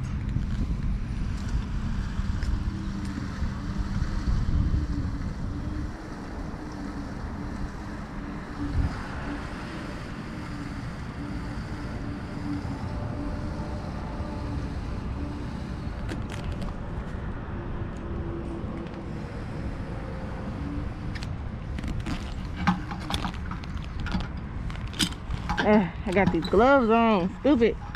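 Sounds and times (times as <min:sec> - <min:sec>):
low vehicle rumble: 0:00.0 - 0:27.9
wind on microphone: 0:00.0 - 0:27.9
light clicks and rattles: 0:21.2 - 0:27.9.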